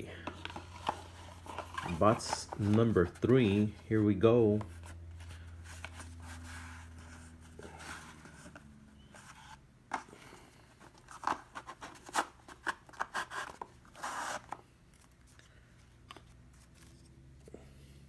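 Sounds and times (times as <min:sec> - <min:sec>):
cardboard tearing: 0:00.4 - 0:03.6, 0:11.0 - 0:14.6.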